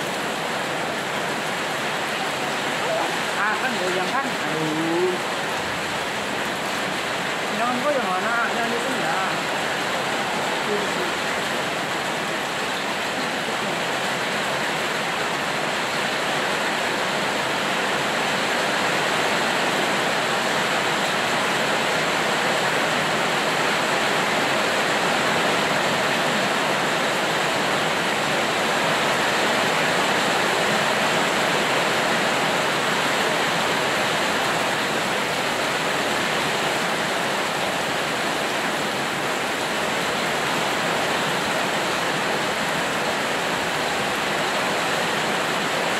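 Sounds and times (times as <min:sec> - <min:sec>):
rain falling steadily: 0:00.0 - 0:45.9.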